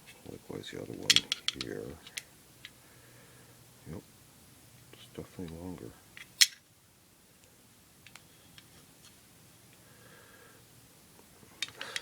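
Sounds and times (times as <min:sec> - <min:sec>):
pistol magazines clicking: 0:01.0 - 0:02.2.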